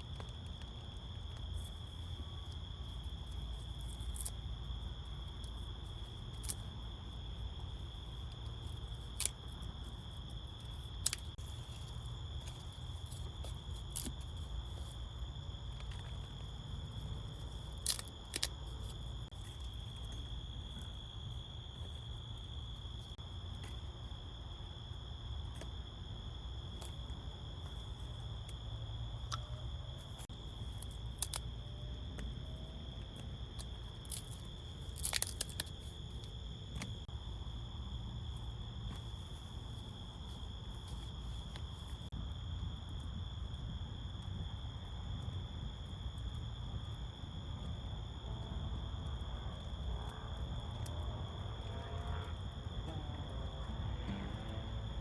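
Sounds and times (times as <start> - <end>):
insects trilling: 0.0 - 55.0
sharp clicks and snaps: 30.7 - 31.5, 33.1 - 36.9.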